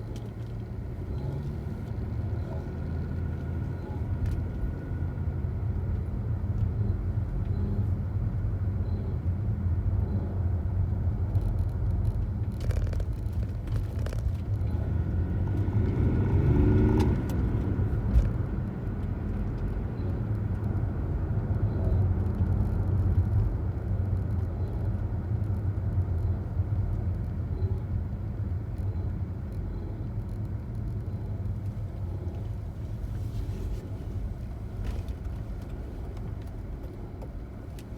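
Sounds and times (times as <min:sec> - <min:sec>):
diesel engine running: 0:00.0 - 0:37.9.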